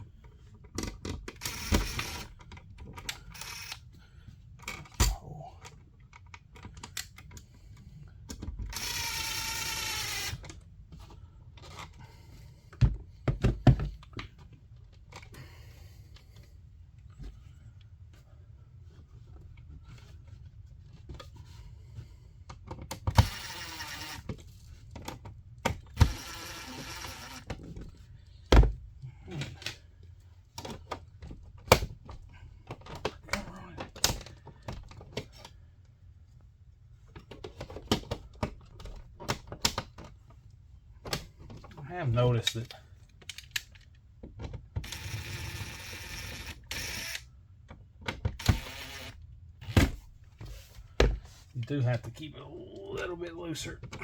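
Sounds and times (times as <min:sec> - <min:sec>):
small motorised hand tool: 0:01.4 - 0:02.4, 0:03.2 - 0:03.8, 0:08.8 - 0:10.4, 0:23.2 - 0:24.3, 0:26.0 - 0:27.5, 0:44.8 - 0:47.2, 0:48.4 - 0:49.2.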